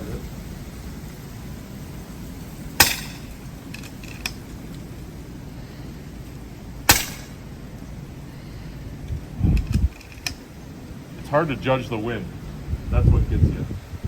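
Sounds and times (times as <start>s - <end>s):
air rifle shots: 2.8s - 4.5s, 6.8s - 7.6s
wind on microphone: 6.5s - 14.0s.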